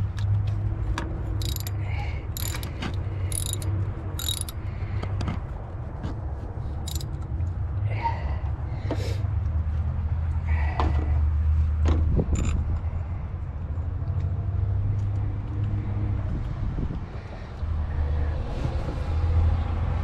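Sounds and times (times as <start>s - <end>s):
ratchet wrench clicking: 1.4s - 1.8s, 2.4s - 4.6s, 6.9s - 7.1s.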